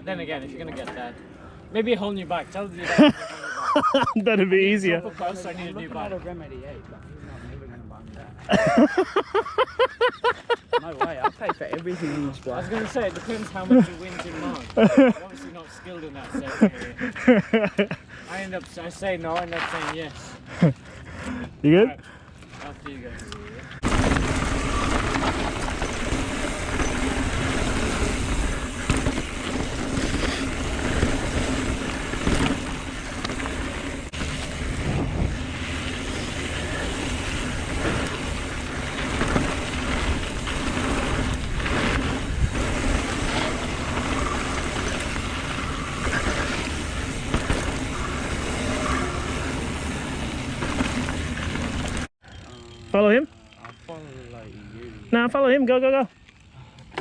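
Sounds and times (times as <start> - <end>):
bike tyre rumble: 10.9 - 21.3, 22.3 - 55.4.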